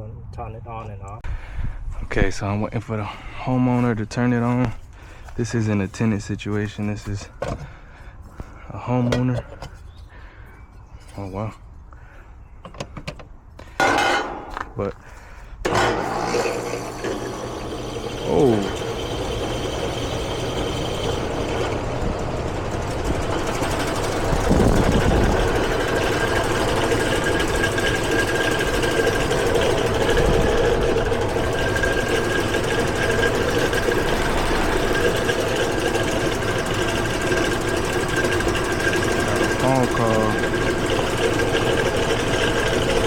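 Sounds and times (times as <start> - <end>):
fan running with knocking rattle: 12.7 - 14.9, 15.6 - 43.0.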